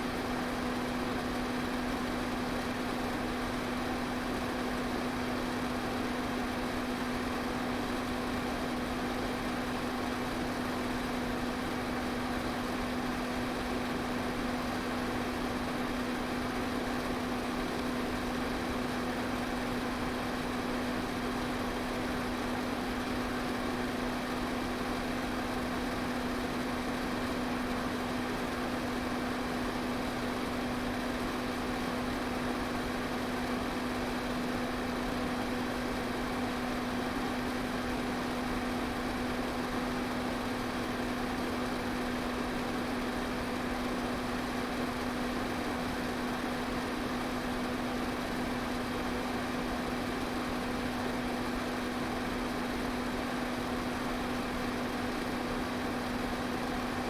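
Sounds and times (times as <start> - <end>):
electric fan running: 0.0 - 8.4.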